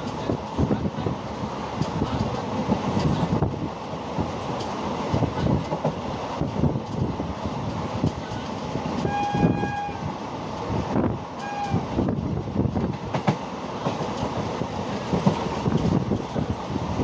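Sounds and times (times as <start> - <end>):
train wheels clattering over rails: 0.0 - 9.4, 11.4 - 17.0
train horn: 9.0 - 10.2, 11.4 - 12.0.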